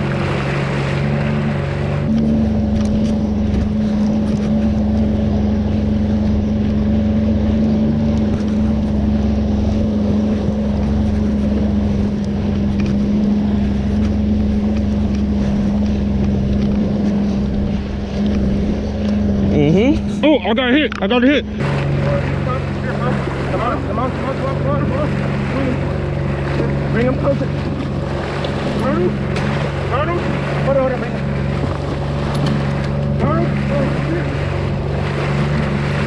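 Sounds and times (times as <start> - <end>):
jet ski engine running: 0.0 - 36.0
water noise: 0.0 - 36.0
wind: 0.0 - 36.0.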